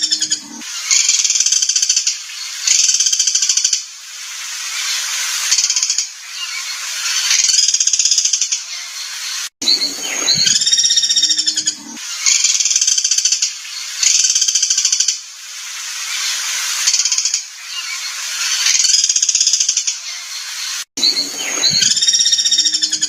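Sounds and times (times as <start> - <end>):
harsh bird trills: 0.0 - 2.1, 5.7 - 14.4, 17.1 - 23.0.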